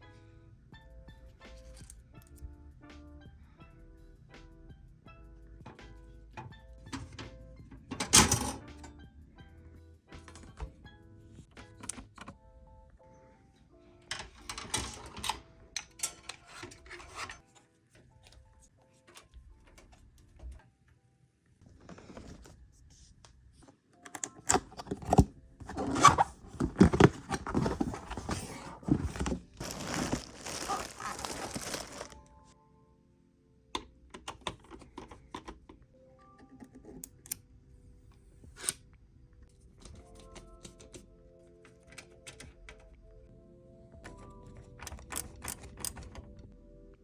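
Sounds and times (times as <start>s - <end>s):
packaging rustling and crinkling: 25.6s - 32.3s.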